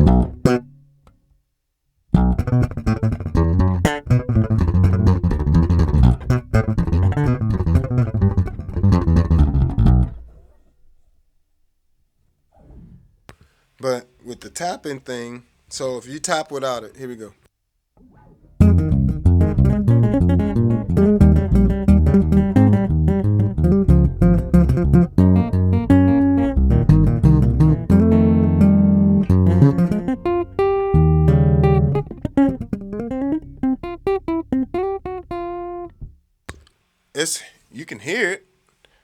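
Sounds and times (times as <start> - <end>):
tapped electric bass notes: 0.0 - 0.7, 2.2 - 10.4, 18.6 - 36.2.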